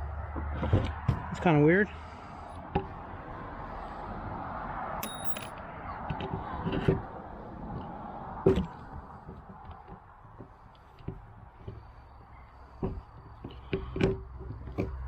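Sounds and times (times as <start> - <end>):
metallic clink: 5.0 - 5.6.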